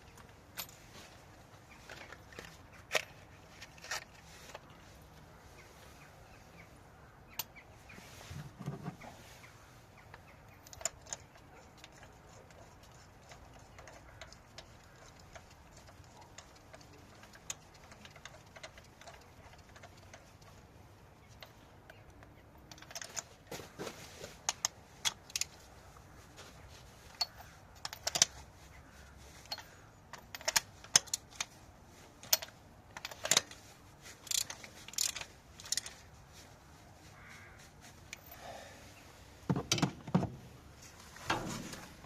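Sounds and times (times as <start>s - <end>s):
hand tools clicking on metal: 10.1s - 20.6s, 21.3s - 23.3s, 27.1s - 28.4s, 29.4s - 31.6s, 32.2s - 36.0s.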